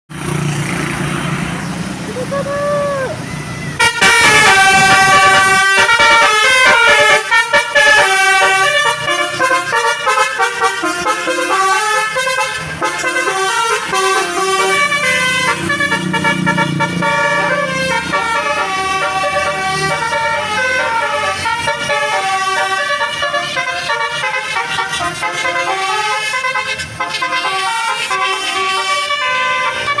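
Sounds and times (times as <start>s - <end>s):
bus musical horn melody: 2.7s - 30.0s.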